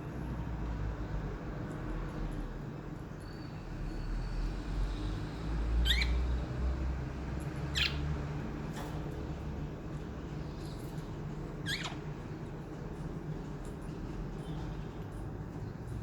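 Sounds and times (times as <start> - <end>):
budgerigars chirping: 5.8 - 6.3, 7.7 - 8.0, 11.6 - 12.0.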